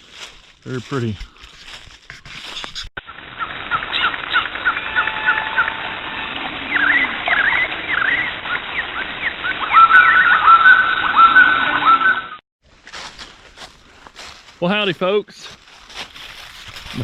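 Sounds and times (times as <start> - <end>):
animals chirping and squawking: 2.4 - 12.4.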